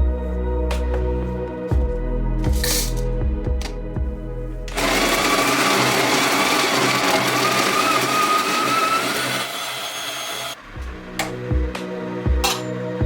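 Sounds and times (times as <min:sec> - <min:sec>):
background music: 0:00.0 - 0:07.9, 0:10.5 - 0:13.0
coffee grinder whirring: 0:04.7 - 0:10.6.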